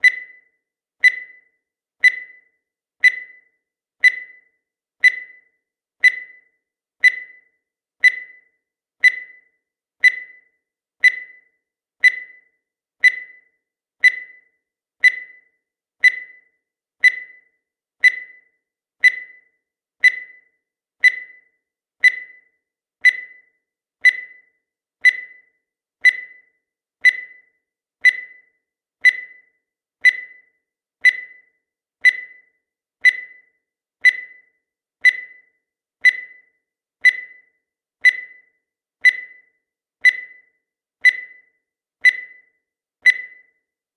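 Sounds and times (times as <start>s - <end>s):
short high timer blips: 0.0s - 0.4s, 1.0s - 1.4s, 2.0s - 2.4s, 3.0s - 3.4s, 4.0s - 4.4s, 5.0s - 5.4s, 6.0s - 6.4s, 7.0s - 7.4s, 8.0s - 8.4s, 9.0s - 9.4s, 10.0s - 10.4s, 41.0s - 43.5s.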